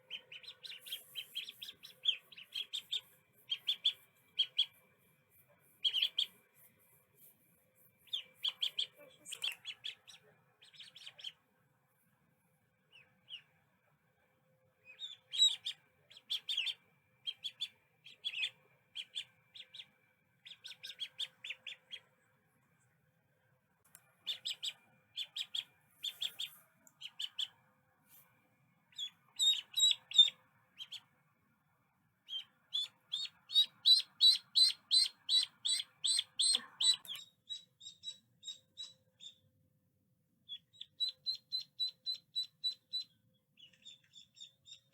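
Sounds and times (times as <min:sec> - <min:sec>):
ducklings peeping: 0:00.0 - 0:04.8, 0:05.7 - 0:06.4, 0:08.0 - 0:11.5, 0:12.9 - 0:13.6, 0:14.8 - 0:22.2, 0:24.0 - 0:27.6, 0:28.9 - 0:31.2, 0:32.2 - 0:39.4, 0:40.5 - 0:44.9.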